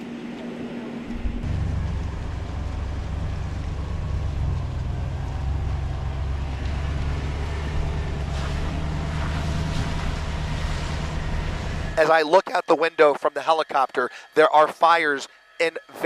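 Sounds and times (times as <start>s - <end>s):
helicopter cabin drone: 0.0s - 16.0s.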